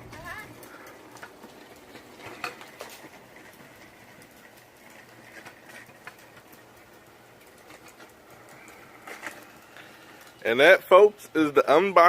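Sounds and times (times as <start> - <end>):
scooter wheels rolling on pavement: 0.0 - 12.0.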